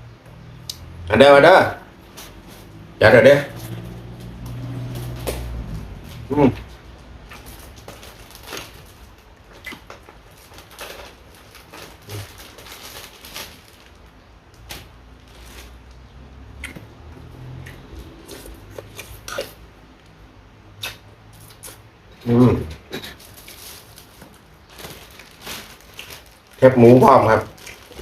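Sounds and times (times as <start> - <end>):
chewing: 17.6 - 19.6.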